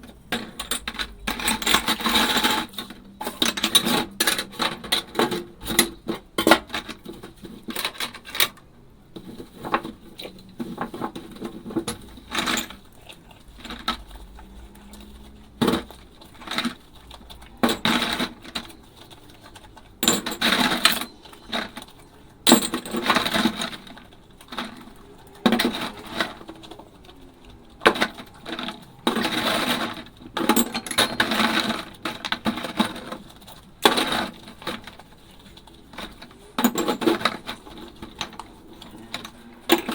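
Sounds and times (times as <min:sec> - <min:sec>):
dishes clinking and clattering: 0:14.8 - 0:35.0, 0:35.9 - 0:39.9.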